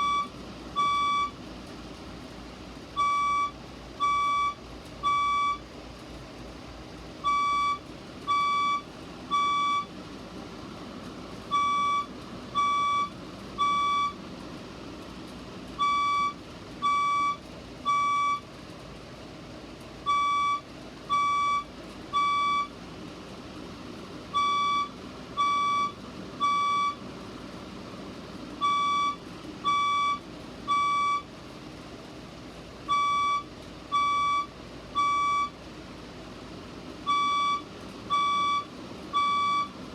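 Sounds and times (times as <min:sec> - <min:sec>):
fire alarm beeping: 0:00.0 - 0:01.4, 0:03.0 - 0:05.6, 0:07.2 - 0:09.9, 0:11.5 - 0:14.2, 0:15.8 - 0:18.4, 0:20.1 - 0:22.7, 0:24.3 - 0:27.0, 0:28.6 - 0:31.3, 0:32.9 - 0:35.6, 0:37.1 - 0:39.8.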